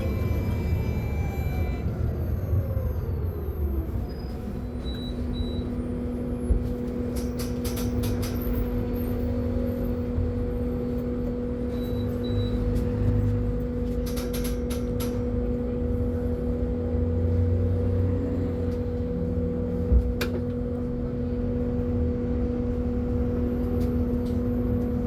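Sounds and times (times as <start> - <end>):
electric motor whine: 0.0 - 3.8.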